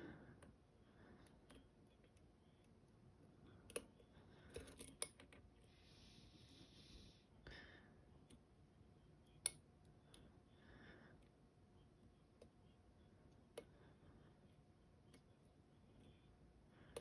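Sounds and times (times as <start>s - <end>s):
soft hiss: 5.6s - 8.4s.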